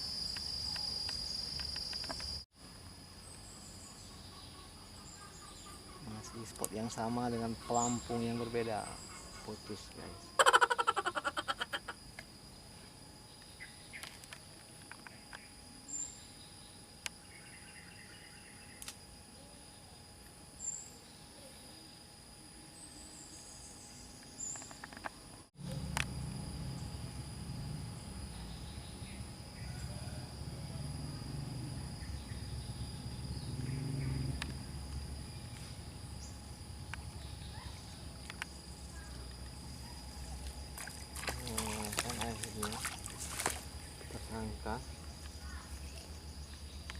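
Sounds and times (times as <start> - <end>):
high insect drone: 0.0 - 46.9.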